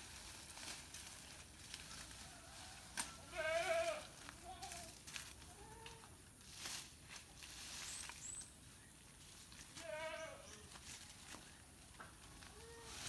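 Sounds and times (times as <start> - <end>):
goat bleating: 3.2 - 4.8, 9.8 - 10.4.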